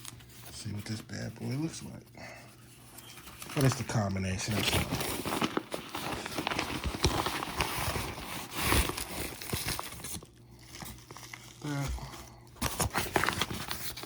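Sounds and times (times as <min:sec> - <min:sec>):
plastic packaging crinkling: 0:02.8 - 0:14.0.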